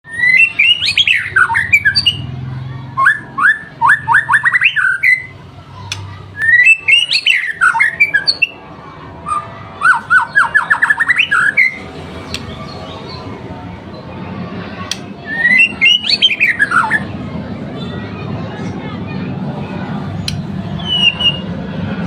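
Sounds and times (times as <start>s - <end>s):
bird singing whistled notes: 0.1s - 2.2s, 6.4s - 8.6s, 15.2s - 17.0s, 20.8s - 21.5s
sharp clicking bird calls: 5.8s - 8.5s, 9.9s - 13.2s, 14.8s - 17.0s, 20.2s - 21.2s.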